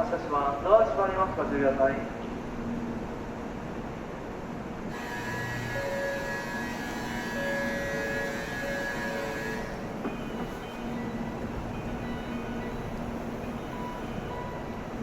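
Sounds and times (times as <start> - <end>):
low train rumble: 0.0 - 15.0
train traction motors whining: 4.9 - 15.0.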